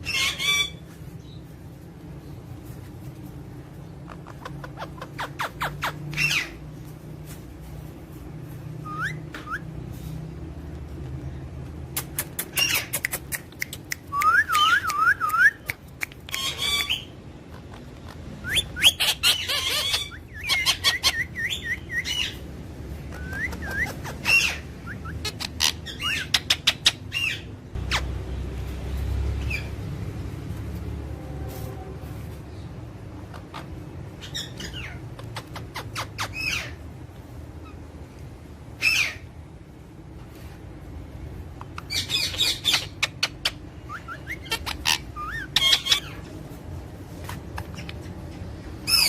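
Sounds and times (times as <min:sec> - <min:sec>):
parrots chirping and squawking: 0:00.0 - 0:01.4, 0:03.7 - 0:06.7, 0:08.5 - 0:10.2, 0:12.0 - 0:13.9, 0:16.2 - 0:28.3, 0:29.0 - 0:30.0, 0:33.1 - 0:38.0, 0:38.7 - 0:39.4, 0:41.5 - 0:49.0.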